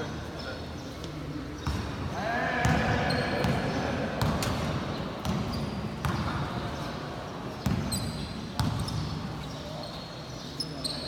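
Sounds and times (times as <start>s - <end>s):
basketball bouncing on court: 1.6s - 2.0s, 2.6s - 6.7s, 7.6s - 9.4s.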